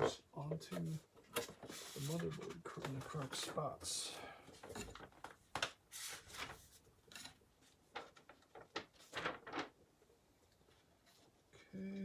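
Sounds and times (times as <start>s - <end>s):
paper rustling and clicks: 0.7s - 3.7s, 4.6s - 9.8s.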